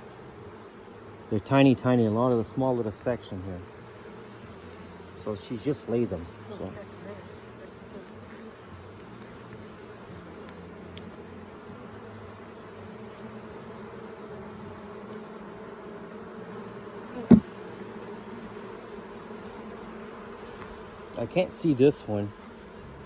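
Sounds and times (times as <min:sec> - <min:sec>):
honeybees buzzing: 0:00.0 - 0:23.0
sharp bump: 0:17.2 - 0:17.5.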